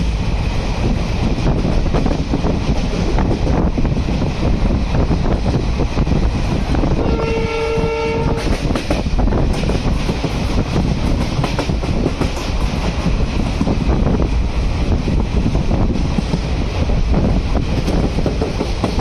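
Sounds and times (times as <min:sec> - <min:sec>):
train rumble and wheel clatter: 0:00.0 - 0:19.0
train horn blast: 0:06.9 - 0:08.6.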